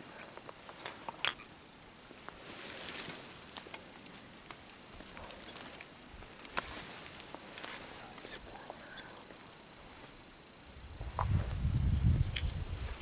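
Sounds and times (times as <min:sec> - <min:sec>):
soft wind gusts: 0:00.0 - 0:13.0
clothing and gear rustling: 0:02.1 - 0:08.2.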